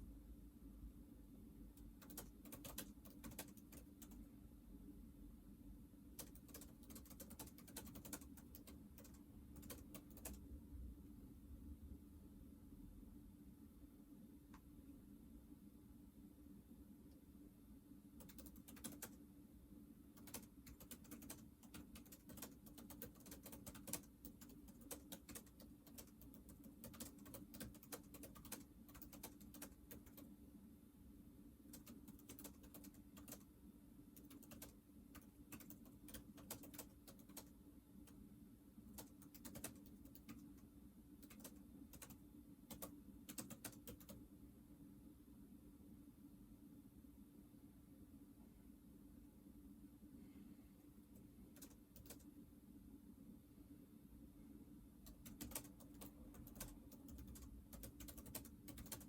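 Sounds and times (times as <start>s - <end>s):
typing on computer keyboard: 1.8s - 4.3s, 6.1s - 10.5s, 18.2s - 19.2s, 20.1s - 30.3s, 31.7s - 33.5s, 34.1s - 38.2s, 38.9s - 44.2s, 51.5s - 52.3s, 55.0s - 59.0s.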